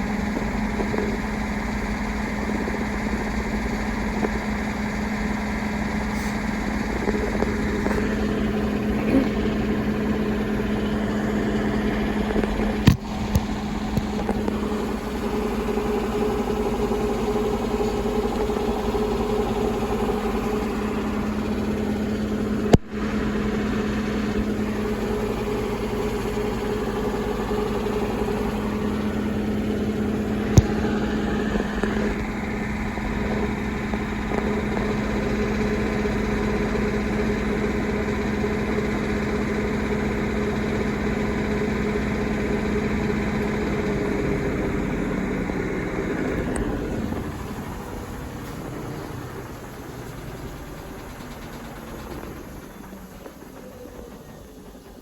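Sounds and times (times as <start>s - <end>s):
washing machine rumbling: 0.0s - 55.0s.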